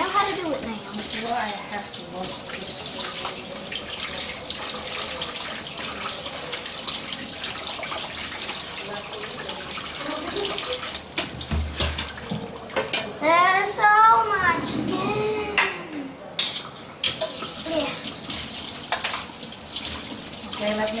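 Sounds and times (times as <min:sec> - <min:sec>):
tap running into sink: 0:10.3 - 0:13.1.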